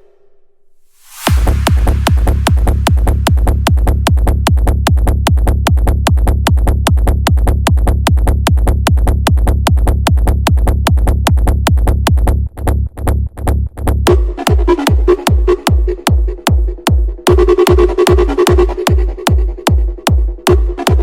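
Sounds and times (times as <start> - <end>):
heavy bass: 0.0 - 21.0
hardstyle dance music: 1.3 - 8.2, 14.1 - 21.0
pounding kick drum: 1.3 - 12.3, 14.1 - 21.0.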